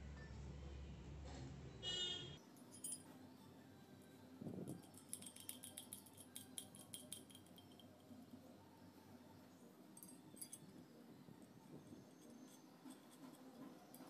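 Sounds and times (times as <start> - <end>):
light metallic clinks and jingles: 2.6 - 3.4, 4.5 - 8.2, 9.9 - 14.0.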